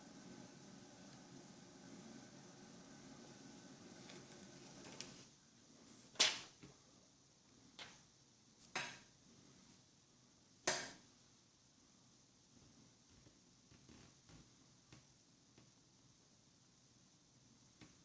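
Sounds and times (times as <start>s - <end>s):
faint room hum: 0.0s - 18.0s.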